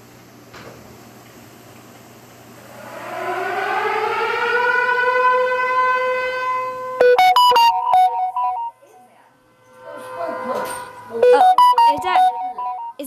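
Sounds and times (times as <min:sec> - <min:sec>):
civil-defense siren wailing: 0:02.6 - 0:13.0
short tones jumping pitch: 0:07.0 - 0:09.0, 0:09.8 - 0:13.0.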